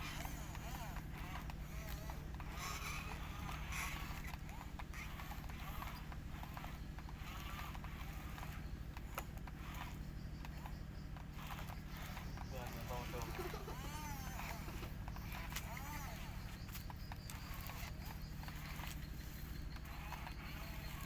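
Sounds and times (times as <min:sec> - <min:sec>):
diesel engine running: 0:00.0 - 0:21.0
sharp clicks: 0:00.0 - 0:21.0.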